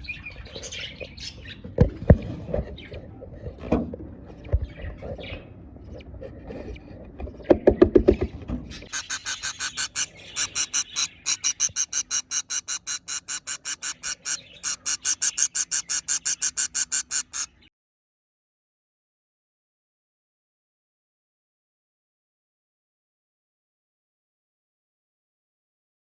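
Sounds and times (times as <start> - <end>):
chicks begging calls: 8.8 - 17.6.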